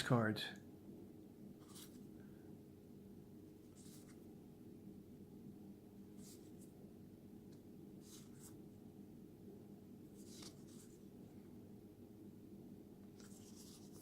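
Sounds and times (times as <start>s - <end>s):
steady low hum: 0.0s - 14.0s
trading cards swishing: 1.6s - 2.0s, 10.2s - 11.0s, 13.1s - 14.0s.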